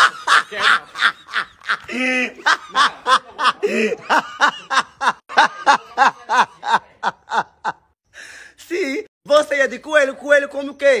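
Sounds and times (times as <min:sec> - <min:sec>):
hearty laughter: 0:00.0 - 0:08.0.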